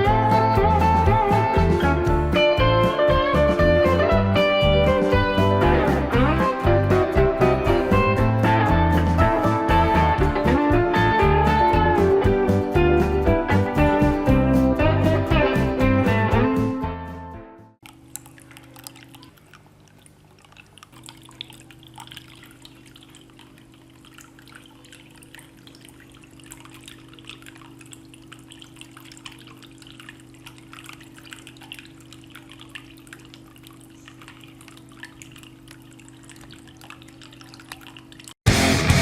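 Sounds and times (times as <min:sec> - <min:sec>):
water trickling and dripping: 0:17.8 - 0:38.4.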